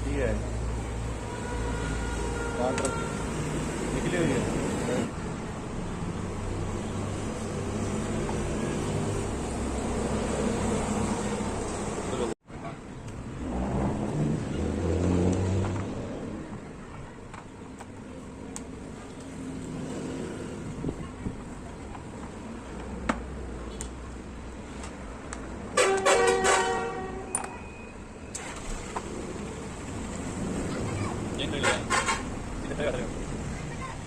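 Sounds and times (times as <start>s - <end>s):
vehicle horn honking: 1.3s - 3.4s, 25.8s - 27.8s.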